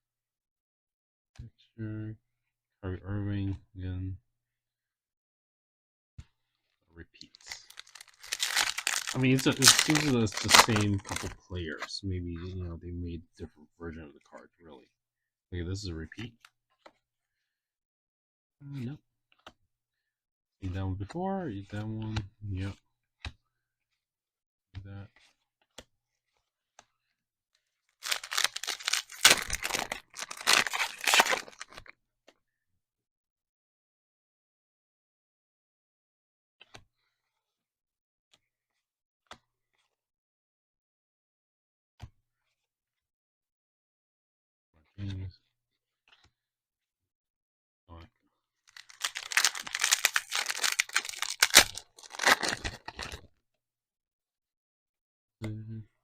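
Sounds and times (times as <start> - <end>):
plastic wrapper tearing and crinkling: 7.4 - 11.4, 28.0 - 31.9, 48.7 - 53.3.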